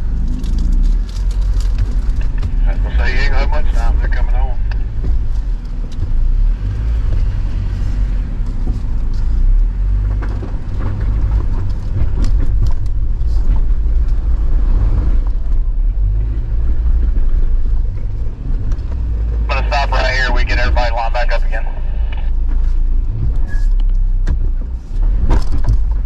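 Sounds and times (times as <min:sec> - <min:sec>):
low engine rumble: 0:00.0 - 0:26.0
clicks and knocks from rocks: 0:00.2 - 0:02.6.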